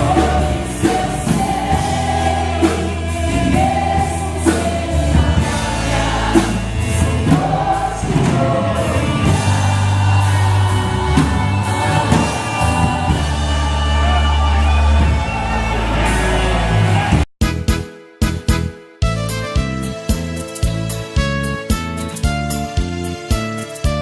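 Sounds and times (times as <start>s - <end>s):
voices singing gospel: 0.0s - 17.2s
band with bass and drums: 0.0s - 24.0s.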